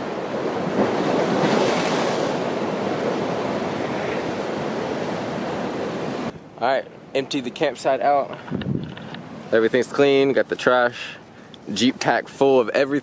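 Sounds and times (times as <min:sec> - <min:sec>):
wind on microphone: 0:08.4 - 0:09.4.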